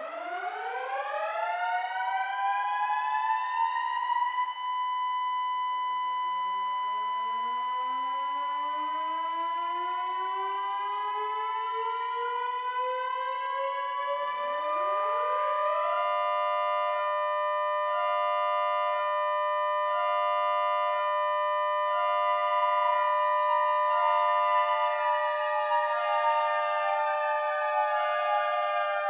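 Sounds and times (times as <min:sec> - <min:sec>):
tornado warning sirens steady tones: 0:00.0 - 0:29.0
hi-lo siren tone: 0:03.9 - 0:29.0.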